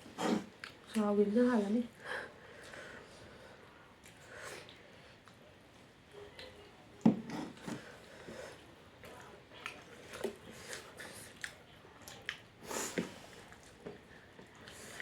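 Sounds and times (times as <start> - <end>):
chewing and lip smacks: 9.0 - 15.0.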